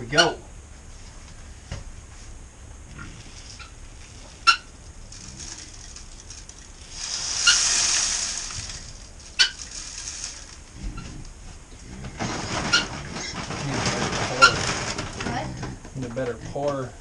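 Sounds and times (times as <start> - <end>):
grain pouring hiss: 2.9 - 15.2.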